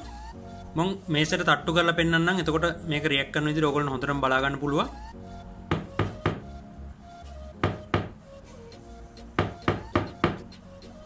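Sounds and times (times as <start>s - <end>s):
hand tapping on table: 7.6s - 8.2s.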